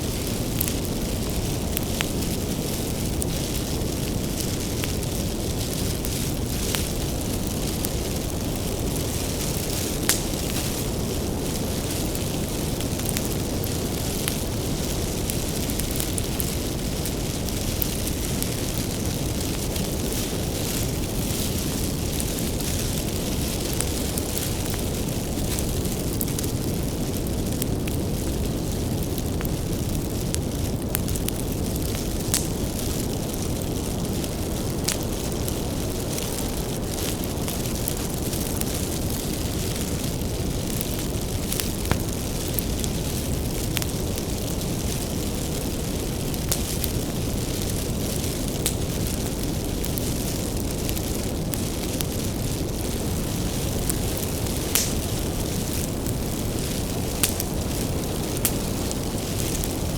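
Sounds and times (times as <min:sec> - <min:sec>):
rush of bonfire flames: 0:00.0 - 0:59.9
wood crackling and popping: 0:00.0 - 0:59.9.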